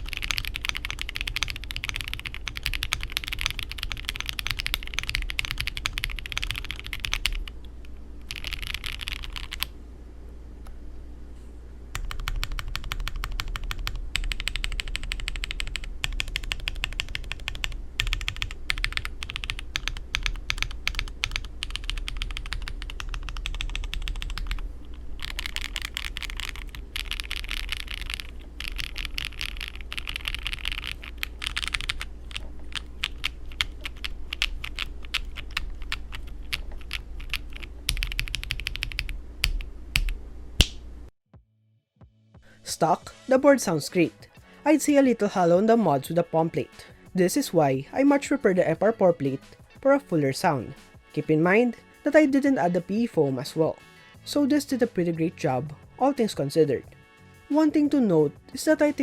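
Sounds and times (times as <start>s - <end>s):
mechanical keyboard typing: 0.0s - 7.6s, 8.3s - 9.7s, 12.0s - 24.6s, 25.2s - 40.2s.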